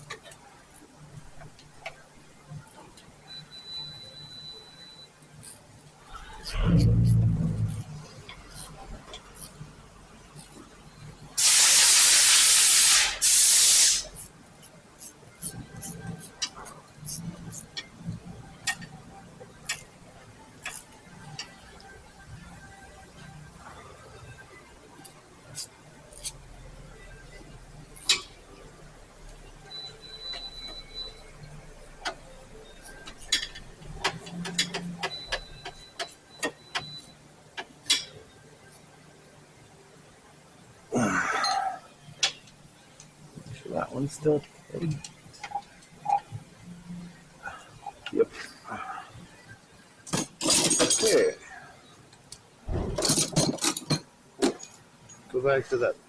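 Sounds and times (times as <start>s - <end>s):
pressurised spray hissing: 11.4s - 14.2s
hand tools clinking on metal: 50.3s - 51.3s.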